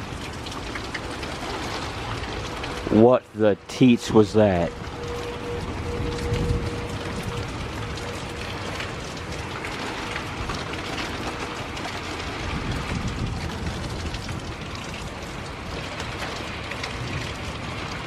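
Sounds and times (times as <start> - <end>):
heavy rain pouring: 0.0 - 18.0
wind buffeting microphone: 3.8 - 18.0.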